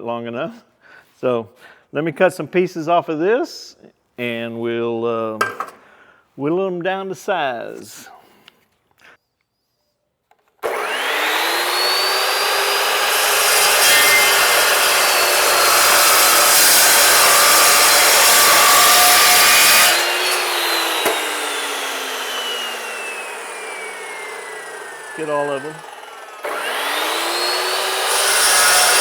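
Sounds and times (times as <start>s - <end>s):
metal-cutting saw cutting steel: 10.6s - 29.0s.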